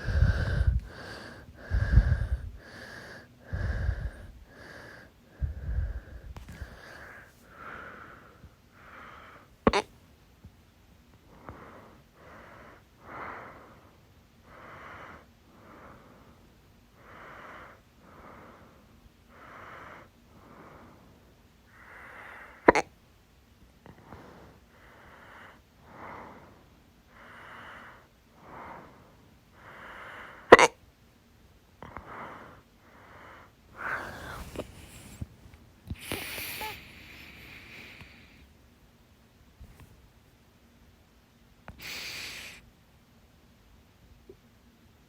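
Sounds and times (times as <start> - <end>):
person breathing in and out: 0.0 - 9.8, 31.8 - 38.5, 39.6 - 40.0
sharp loud hiccups: 9.7 - 9.9, 22.7 - 22.9, 30.5 - 30.7.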